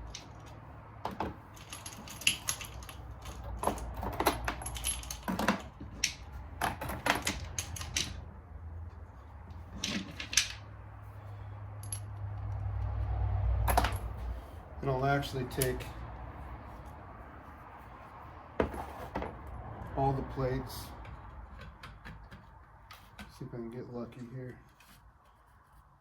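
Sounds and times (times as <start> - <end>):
metal parts clinking: 1.4 - 8.2, 9.7 - 10.7, 13.7 - 14.2.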